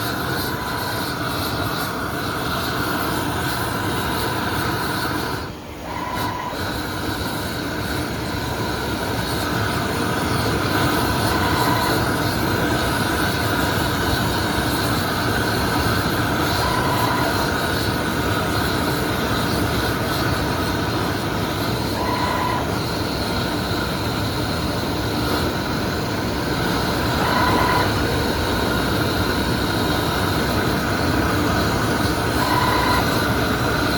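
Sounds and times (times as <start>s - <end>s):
machine hum and whir: 0.0s - 33.9s
faint squeal: 10.8s - 12.4s, 21.9s - 23.0s, 27.1s - 28.1s.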